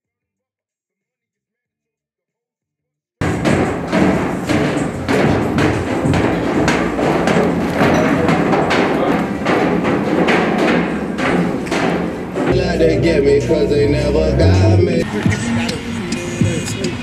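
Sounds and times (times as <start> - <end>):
irregular thuds of pads colliding: 3.2 - 12.6.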